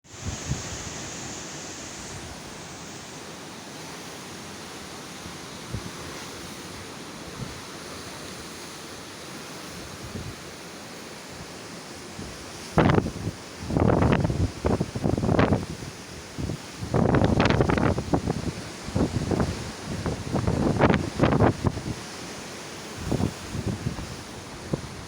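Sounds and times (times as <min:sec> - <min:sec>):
strong wind rushing: 0:00.1 - 0:01.1, 0:16.4 - 0:22.0, 0:23.0 - 0:25.0
wind buffeting microphone: 0:00.1 - 0:01.1, 0:12.2 - 0:22.1, 0:23.0 - 0:25.0
waves breaking: 0:00.1 - 0:25.0.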